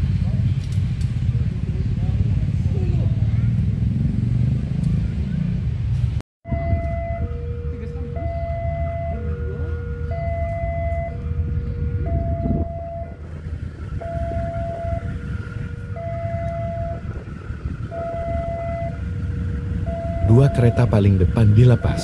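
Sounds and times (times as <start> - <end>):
locomotive rumbling on tracks: 0.0 - 22.0
level crossing alarm two-tone signal: 6.5 - 13.3, 14.0 - 17.2, 17.8 - 22.0.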